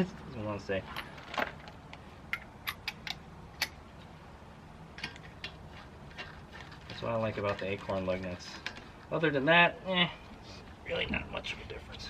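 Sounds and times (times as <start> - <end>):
lug nuts clicking: 2.3 - 3.8.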